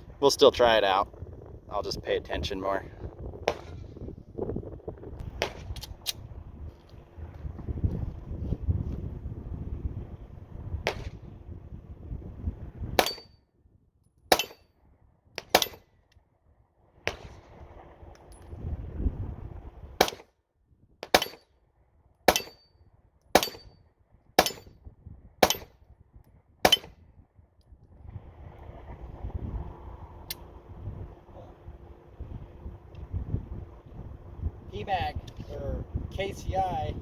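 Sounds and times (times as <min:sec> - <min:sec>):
low rumble: 0:00.0 - 0:13.1, 0:17.0 - 0:20.0, 0:27.8 - 0:37.0
pistol shots: 0:22.3 - 0:22.6, 0:23.4 - 0:23.7, 0:25.4 - 0:25.7.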